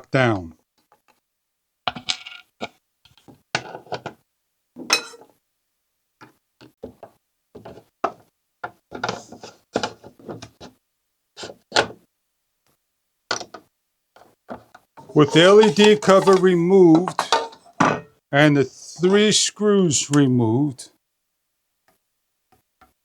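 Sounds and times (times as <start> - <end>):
hardware knocking and rattling: 14.5 - 18.1.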